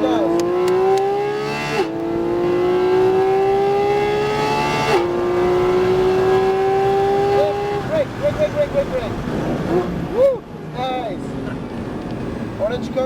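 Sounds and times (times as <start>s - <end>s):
car engine accelerating hard: 0.0s - 10.2s.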